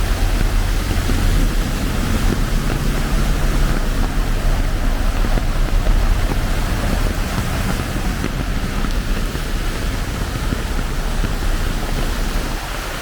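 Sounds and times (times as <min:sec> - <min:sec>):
floodwater rushing: 0:00.0 - 0:13.0
heavy rain: 0:00.0 - 0:13.0
low rumble: 0:00.0 - 0:13.0.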